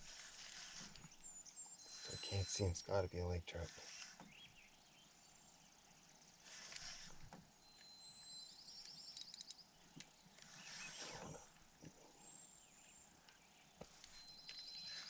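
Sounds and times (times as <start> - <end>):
soft rustles: 0.0 - 2.7, 6.4 - 7.5.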